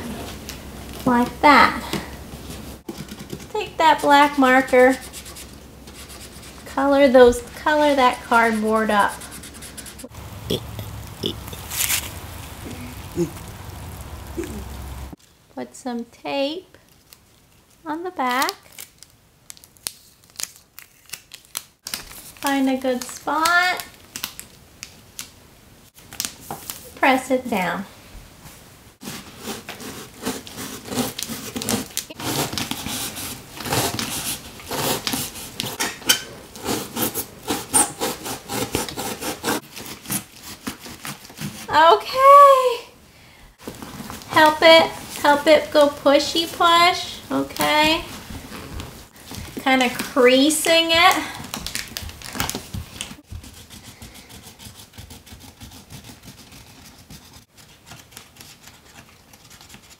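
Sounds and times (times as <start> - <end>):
hands rubbing tape on cardboard: 1.8 - 6.8, 7.8 - 10.1, 11.6 - 12.2, 29.0 - 35.8, 36.5 - 41.8, 53.1 - 59.9.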